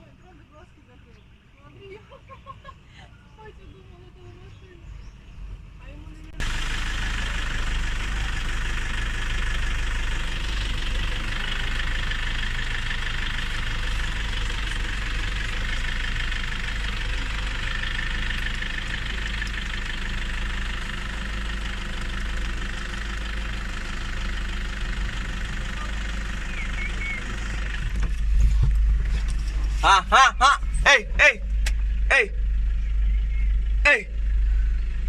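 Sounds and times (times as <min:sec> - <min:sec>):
jeep engine idling: 0:00.0 - 0:35.0.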